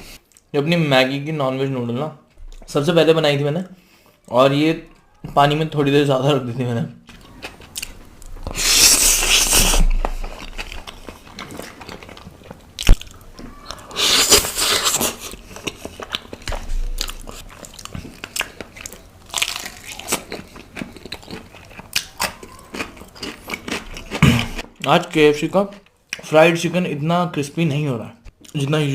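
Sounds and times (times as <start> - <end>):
wet chewing clicks: 7.1 - 26.3
noisy bites or slurps: 8.5 - 10.5, 13.7 - 17.4.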